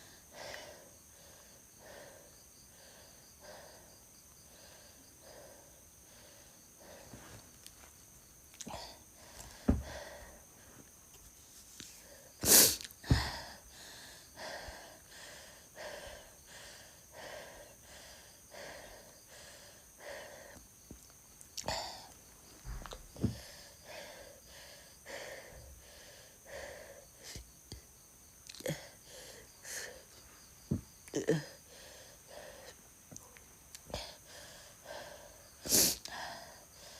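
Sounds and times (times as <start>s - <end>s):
woman wheezing retching breaths: 12.3s - 20.6s, 28.5s - 36.9s.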